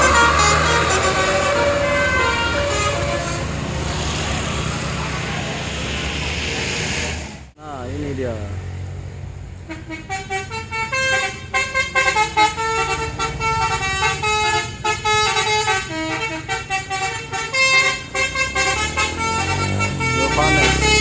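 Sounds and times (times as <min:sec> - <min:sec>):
multi-tone bus horn tune: 0:00.0 - 0:03.8, 0:09.7 - 0:21.0
bus engine running: 0:00.0 - 0:21.0.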